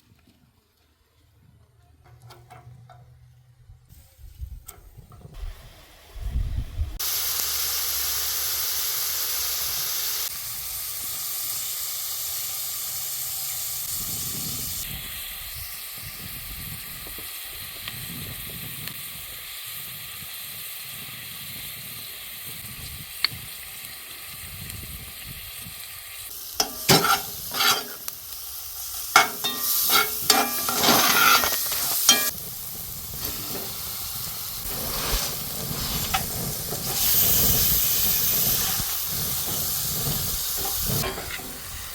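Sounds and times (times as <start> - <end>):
food sizzling in a frying pan: 7.0 - 41.9
utensil scraping a pan: 26.6 - 28.1, 29.2 - 32.4, 33.2 - 34.0, 34.6 - 37.3, 38.2 - 41.7.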